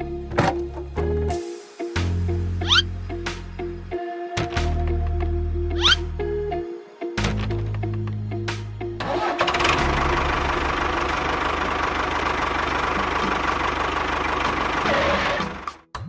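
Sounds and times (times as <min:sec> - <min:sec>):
tractor engine knocking: 0:09.1 - 0:15.8.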